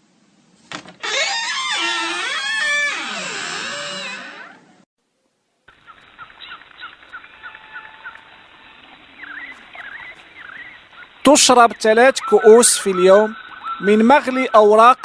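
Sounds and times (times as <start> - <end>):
faint background hiss: 0.0 - 1.0, 4.7 - 14.5
small birds chirping: 5.7 - 15.0
swooping bird calls: 5.7 - 15.0.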